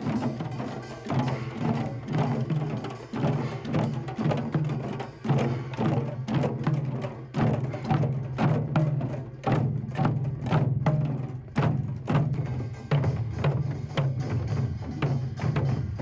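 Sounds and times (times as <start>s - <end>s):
percussive beat: 0.0s - 16.0s.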